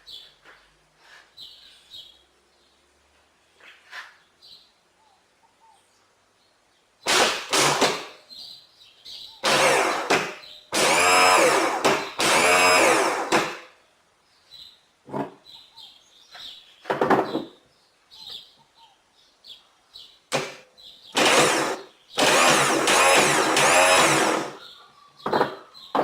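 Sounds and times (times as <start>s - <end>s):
power driver motor whirring: 9.4s - 13.7s, 21.2s - 24.6s.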